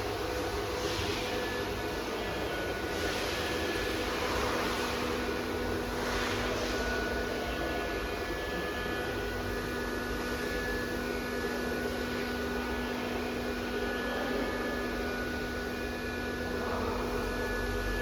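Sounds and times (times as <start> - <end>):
cnc router running with whine: 0.0 - 18.0.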